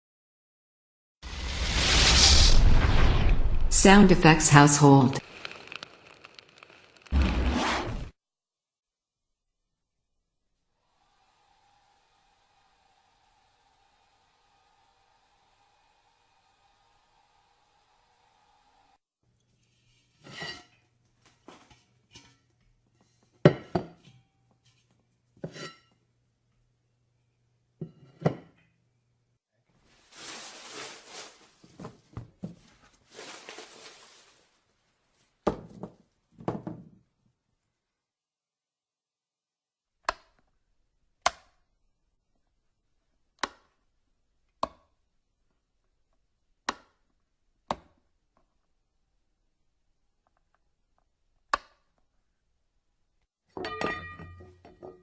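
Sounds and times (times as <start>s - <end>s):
kitchenware clattering: 53.6s - 55.0s.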